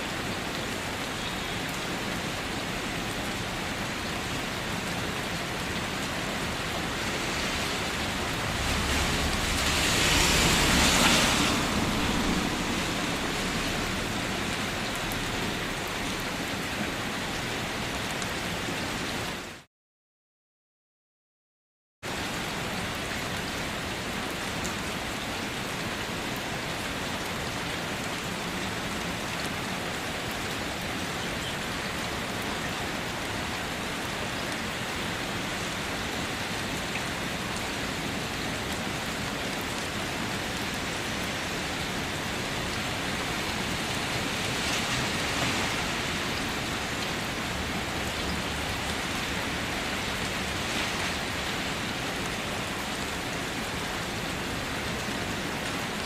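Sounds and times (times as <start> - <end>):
steady rain falling: 0.0 - 19.7, 22.1 - 56.0.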